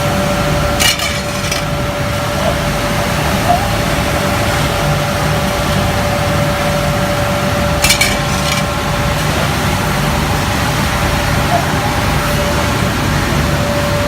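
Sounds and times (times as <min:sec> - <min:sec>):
furnace line rumble and hum: 0:00.0 - 0:14.0
high clinking rattle: 0:00.8 - 0:01.8, 0:07.8 - 0:09.2.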